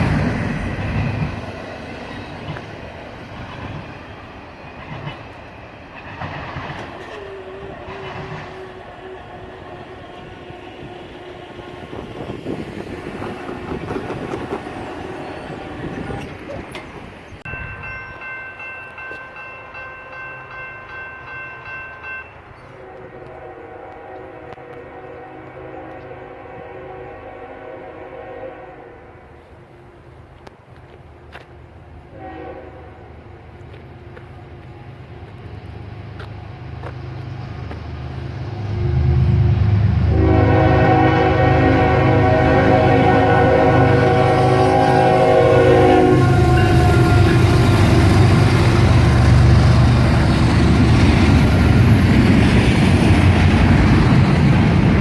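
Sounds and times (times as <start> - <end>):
freight train rumbling by: 0.0 - 55.0
locomotive air horn: 22.7 - 29.3, 32.1 - 33.2, 38.6 - 48.5.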